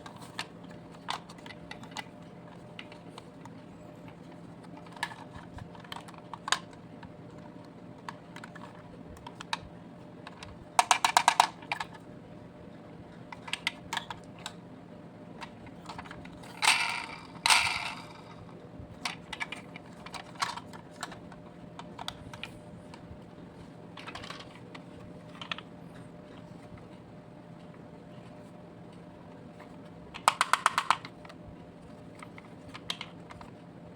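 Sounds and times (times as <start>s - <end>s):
toy vehicles rattling: 16.4s - 18.5s
diecast toy vehicles clicking: 16.6s - 18.4s, 30.2s - 31.1s.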